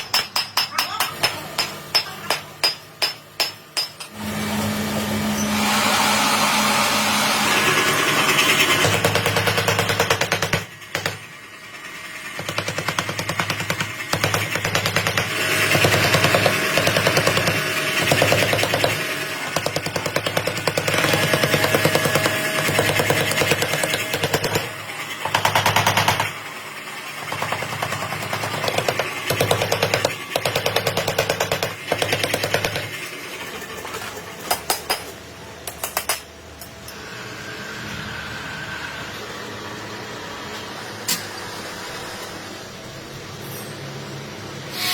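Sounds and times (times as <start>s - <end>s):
machine hammer on metal: 0.0s - 4.2s, 8.8s - 11.3s, 12.4s - 26.4s, 27.2s - 33.0s.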